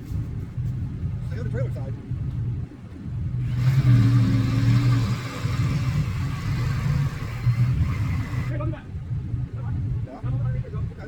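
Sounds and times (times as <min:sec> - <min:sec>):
vehicle engine revving: 0:03.4 - 0:08.5.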